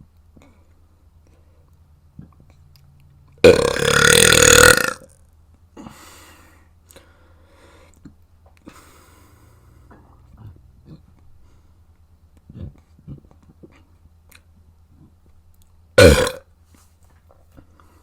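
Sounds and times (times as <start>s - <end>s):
person burping: 3.4s - 5.1s, 16.0s - 16.4s.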